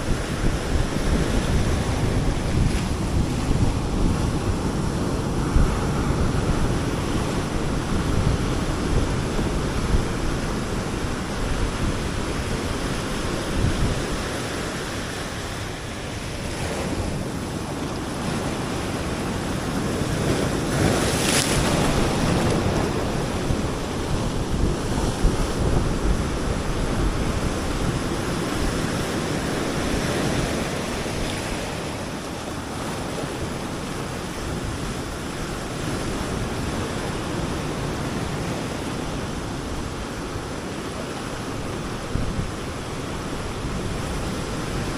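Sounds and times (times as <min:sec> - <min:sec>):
ocean surf breaking: 0:00.0 - 0:44.9
wind buffeting microphone: 0:00.0 - 0:44.9.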